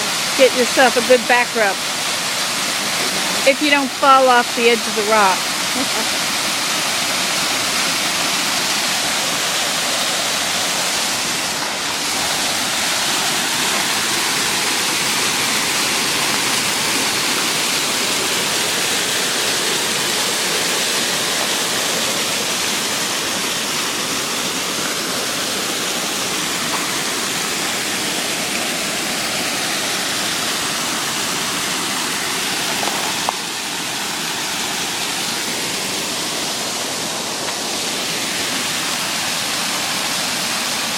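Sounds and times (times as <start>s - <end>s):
waterfall pouring into pool: 0.0s - 40.9s.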